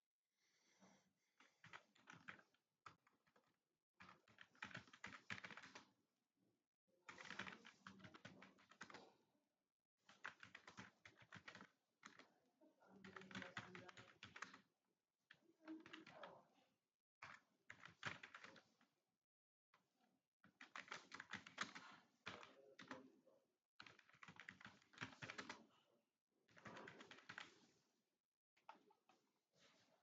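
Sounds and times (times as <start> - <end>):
rapid keyboard typing: 1.4 - 5.9, 7.1 - 9.1, 10.1 - 12.2, 13.0 - 14.7, 15.7 - 16.2, 17.2 - 18.8, 20.5 - 23.0, 23.8 - 25.7, 26.5 - 27.8.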